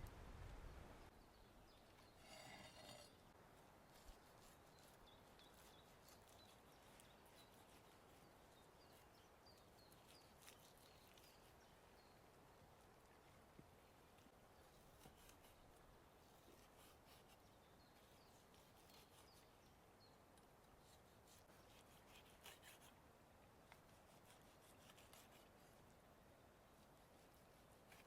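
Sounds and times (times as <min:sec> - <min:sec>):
small birds chirping: 0:04.0 - 0:12.4, 0:14.2 - 0:23.0.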